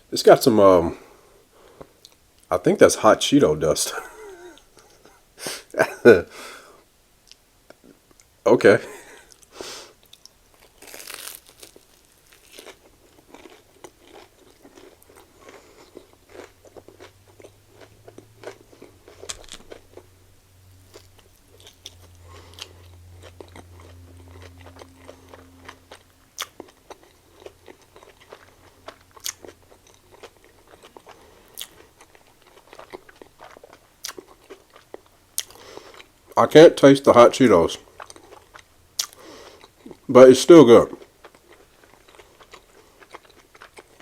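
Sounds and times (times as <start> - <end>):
chewing and crunching: 9.1 - 20.2, 20.8 - 36.4, 37.8 - 44.0.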